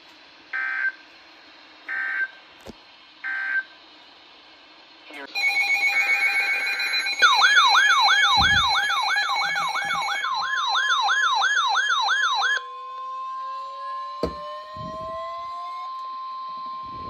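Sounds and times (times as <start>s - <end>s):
steady alarm tone: 5.3s - 17.0s
electronic siren yelping: 5.4s - 17.0s.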